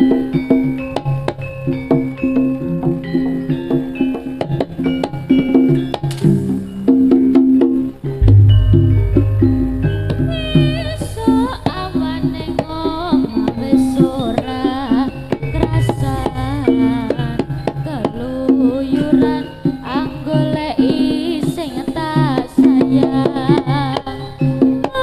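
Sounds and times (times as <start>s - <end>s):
wavering melody line: 8.2s - 12.9s, 15.6s - 19.6s
held low note: 8.2s - 13.2s, 15.6s - 18.3s
hand drums beating: 8.2s - 14.1s, 15.6s - 19.4s.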